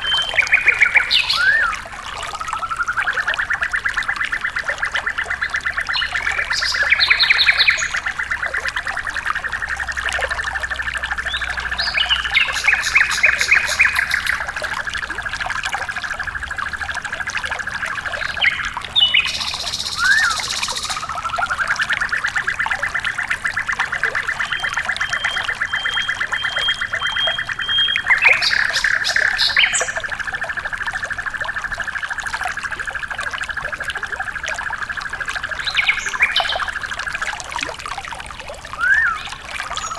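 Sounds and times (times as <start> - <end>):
songbird calls: 0.0 - 37.2, 38.7 - 39.9
trickling water: 0.0 - 39.9
fast pulsing bird trill: 11.3 - 14.6, 18.1 - 30.0
thin even whistle: 19.4 - 21.8.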